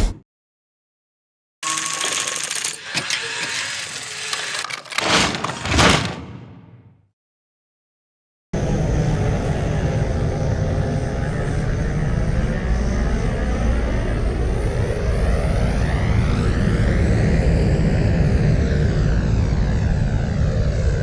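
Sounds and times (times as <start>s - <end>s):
heavy low engine rumble: 8.6s - 16.1s.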